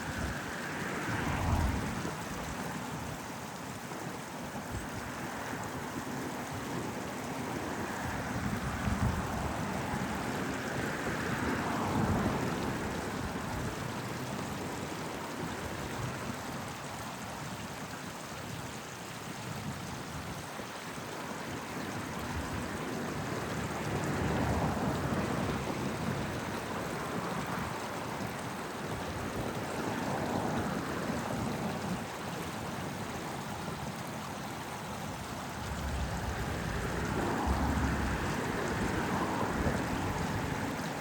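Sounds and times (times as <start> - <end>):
stream rushing water: 0.0 - 41.0
road traffic: 35.2 - 41.0.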